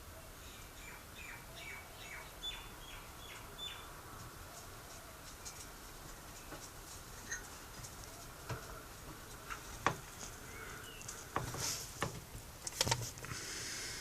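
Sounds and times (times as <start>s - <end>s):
scratchy rustles: 4.6s - 13.3s
heavy breathing: 13.2s - 14.0s.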